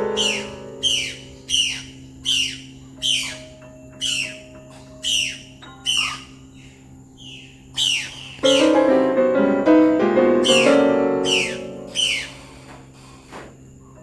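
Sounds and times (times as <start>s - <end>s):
quiet piano notes: 0.0s - 2.1s, 8.4s - 13.1s
bird down-sweeping call: 0.0s - 3.4s, 4.0s - 6.2s, 10.3s - 12.6s.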